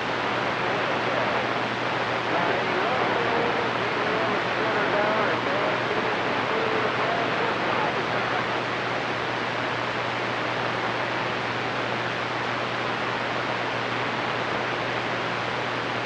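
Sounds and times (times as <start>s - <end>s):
faint low hum: 0.0s - 12.2s
radio static hiss: 0.0s - 16.0s.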